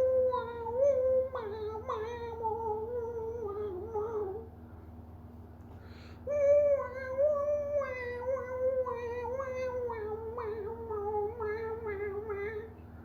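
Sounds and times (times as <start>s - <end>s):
wavering voice-like wail: 0.0s - 4.5s
low electrical hum: 0.0s - 13.0s.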